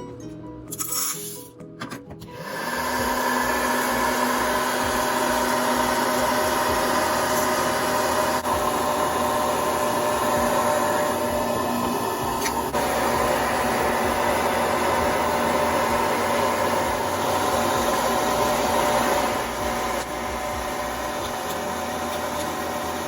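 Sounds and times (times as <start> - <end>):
coffee appliance motor whirring: 2.2 - 23.0.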